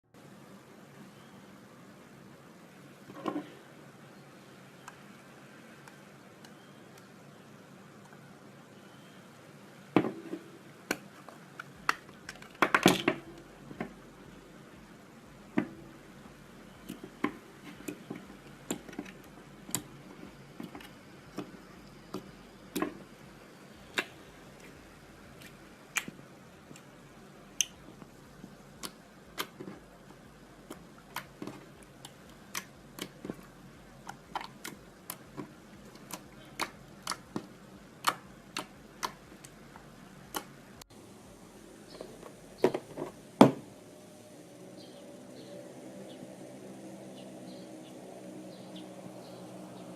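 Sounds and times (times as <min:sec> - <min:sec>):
slime clicking and popping: 0:30.6 - 0:39.6.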